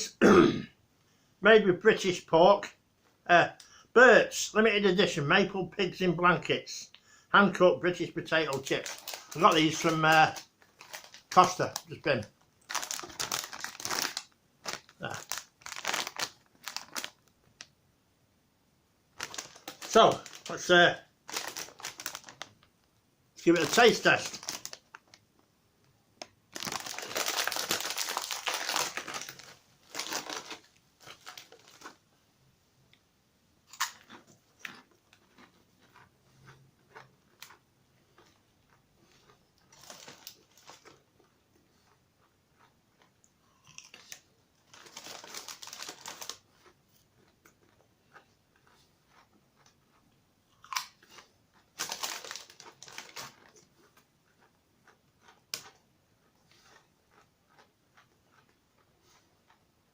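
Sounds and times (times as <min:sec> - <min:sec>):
crisp packet crinkling: 0:08.0 - 0:17.7, 0:19.2 - 0:22.7, 0:23.4 - 0:25.2, 0:26.5 - 0:32.0, 0:39.2 - 0:41.0, 0:43.7 - 0:46.6, 0:50.6 - 0:53.7
crisps being crunched and chewed: 0:08.3 - 0:17.7, 0:19.2 - 0:22.6, 0:23.4 - 0:25.2, 0:26.5 - 0:32.0, 0:33.7 - 0:59.6.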